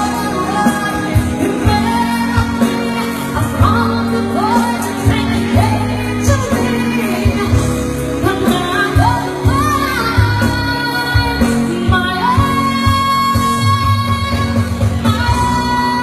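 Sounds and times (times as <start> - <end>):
backing track with steady beat: 0.0 - 16.0
pop song with solo voice: 0.0 - 16.0.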